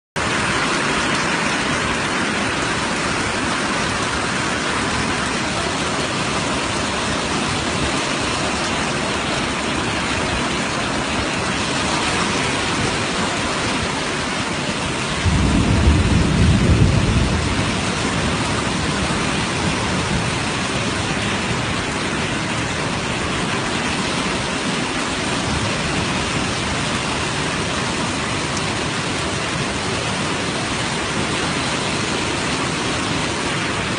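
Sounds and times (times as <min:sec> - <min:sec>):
rain hiss: 0:00.2 - 0:33.9
low rumble: 0:15.1 - 0:22.0.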